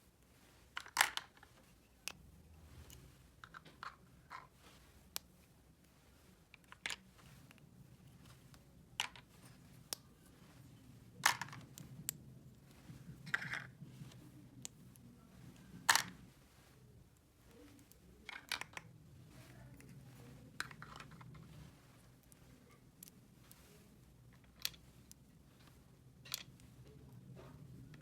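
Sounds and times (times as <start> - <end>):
plastic toy pieces clicking: 0.8 - 1.4, 13.3 - 13.7, 18.3 - 18.9.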